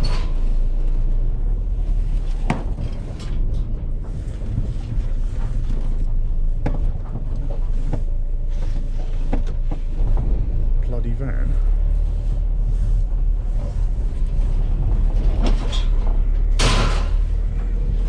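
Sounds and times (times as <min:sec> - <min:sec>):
van body clicks and creaks: 0:00.0 - 0:10.9, 0:11.6 - 0:18.0
van engine and road rumble: 0:00.0 - 0:18.0.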